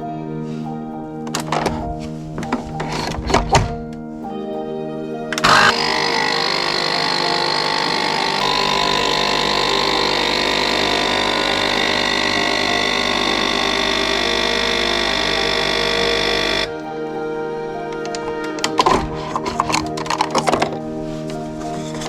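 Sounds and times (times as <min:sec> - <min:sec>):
coffee machine pump buzzing: 0:05.4 - 0:16.8
low hum: 0:05.4 - 0:22.0.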